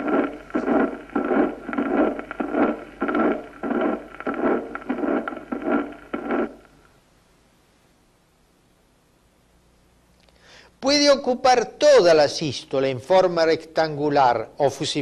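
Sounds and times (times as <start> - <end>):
heart murmur through stethoscope: 0.0 - 6.7.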